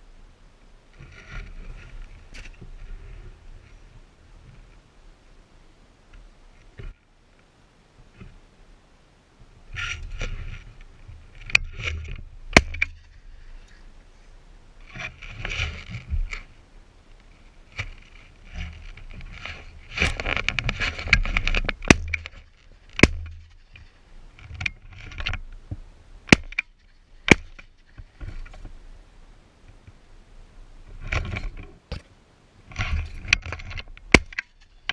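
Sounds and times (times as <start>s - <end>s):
rustling and handling noise: 9.7s - 30.1s
sharp clicks and knocks: 32.7s - 34.9s.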